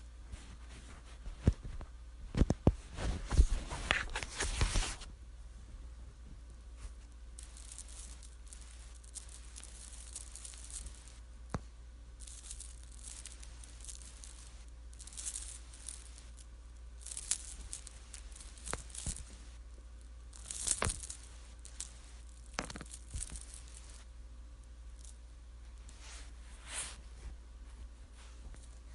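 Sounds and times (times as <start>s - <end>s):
rosary beads clicking and rattling: 7.1s - 26.4s.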